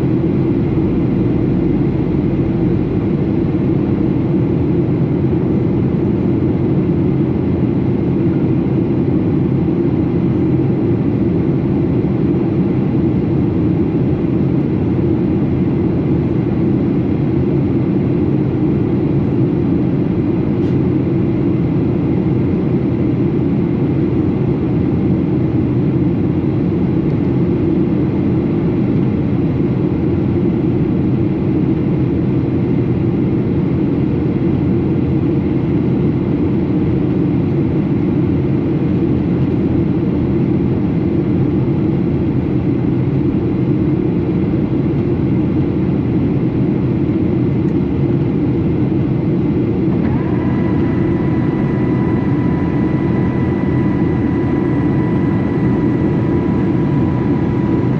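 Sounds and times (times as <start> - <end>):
aircraft engine drone: 0.0 - 57.9.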